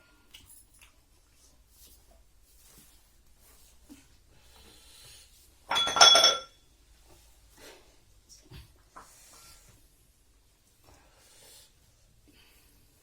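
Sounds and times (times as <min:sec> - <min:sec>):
faint eating sounds: 0:00.0 - 0:05.6
tableware clinking: 0:05.7 - 0:06.6.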